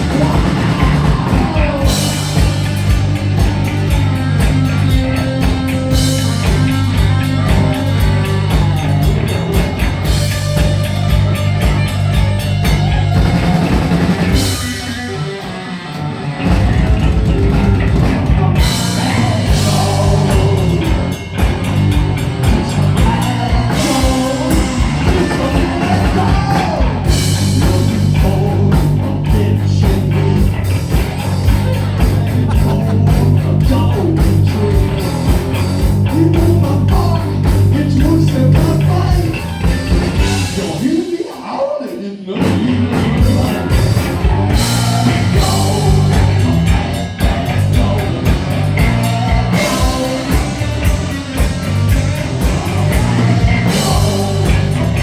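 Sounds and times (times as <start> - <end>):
heavy metal band playing live: 0.0 - 55.0.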